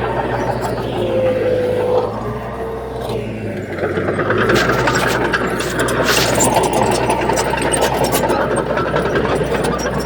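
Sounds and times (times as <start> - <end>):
heavy diesel machinery running: 0.0 - 10.0.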